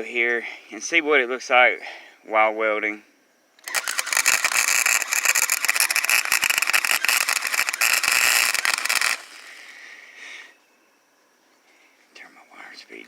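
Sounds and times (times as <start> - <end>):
welding arc crackling: 3.6 - 9.6.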